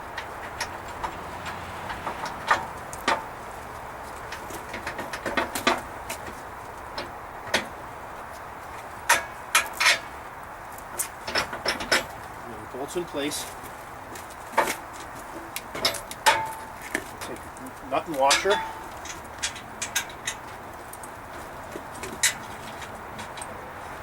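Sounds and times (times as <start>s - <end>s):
metal clicks and knocks: 0.1s - 7.8s, 9.0s - 10.1s, 11.0s - 12.4s, 14.5s - 23.6s.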